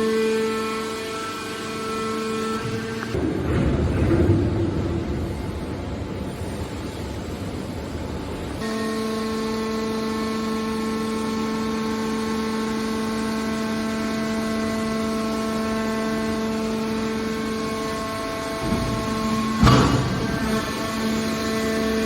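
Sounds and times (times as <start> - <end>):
steady pitched machine hum: 0.0 - 22.0
machinery noise: 16.0 - 22.0.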